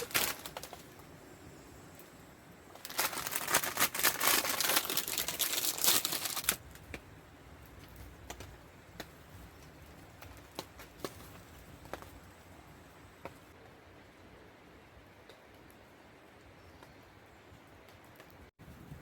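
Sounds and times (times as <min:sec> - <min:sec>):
plastic packet crinkling and tearing: 0:00.0 - 0:00.8, 0:02.8 - 0:06.7
campfire popping: 0:00.0 - 0:13.6.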